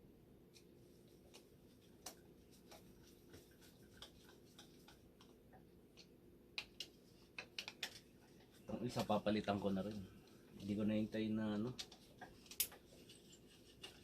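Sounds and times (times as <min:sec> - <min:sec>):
small parts clicking and tapping: 0:11.7 - 0:14.0.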